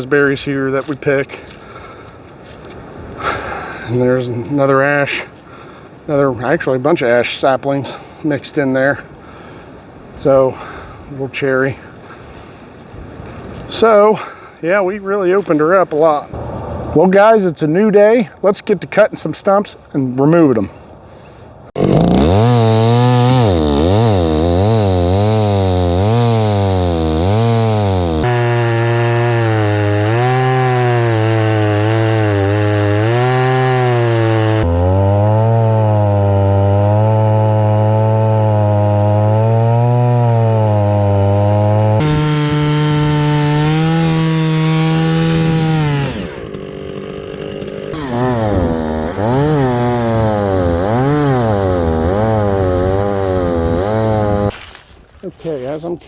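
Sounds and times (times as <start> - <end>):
chainsaw cutting wood: 21.8 - 54.8.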